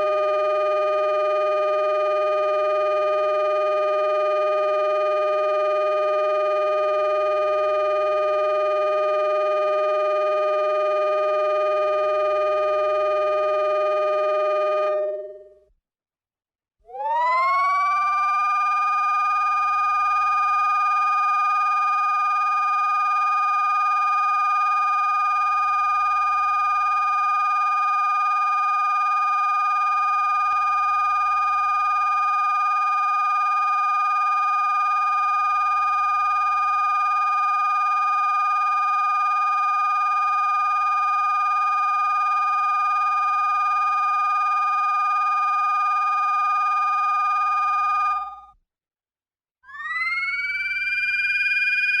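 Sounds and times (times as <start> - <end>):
synthesized electronic tone: 0.0 - 15.6, 45.6 - 48.5.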